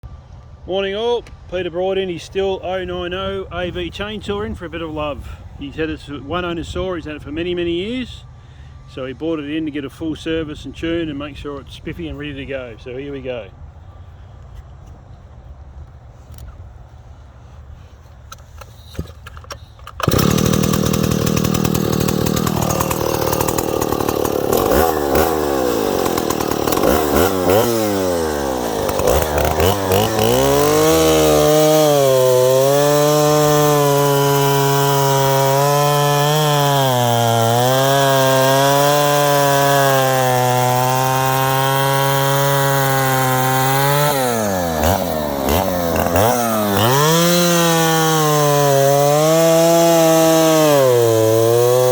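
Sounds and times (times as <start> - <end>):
chainsaw revving: 19.9 - 51.9.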